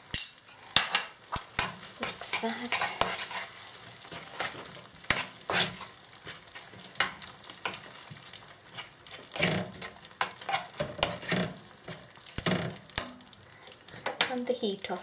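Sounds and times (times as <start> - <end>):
faint sizzle: 0.0 - 15.0
utensil scraping a pan: 1.6 - 7.9, 8.7 - 12.8.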